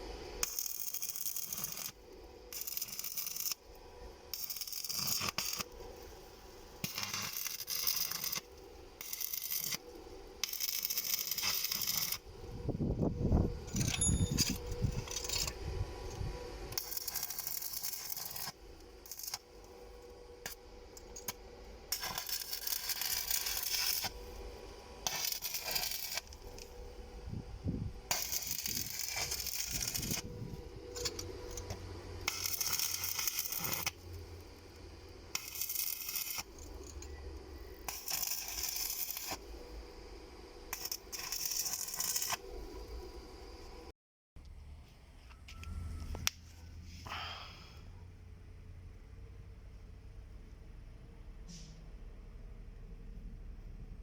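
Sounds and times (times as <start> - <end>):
metal tools clinking and scraping: 13.6 - 15.6, 30.9 - 32.8.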